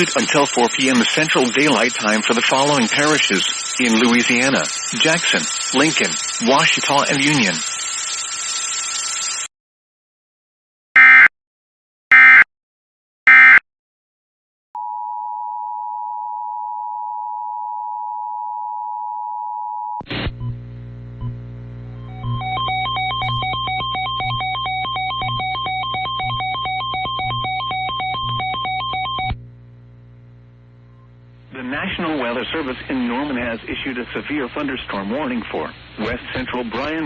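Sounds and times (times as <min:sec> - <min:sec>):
electronic alert jingle beeps: 0:00.0 - 0:09.1
alert data bursts: 0:00.0 - 0:09.5, 0:22.1 - 0:29.3
two-tone attention signal: 0:00.0 - 0:09.5, 0:22.0 - 0:29.4.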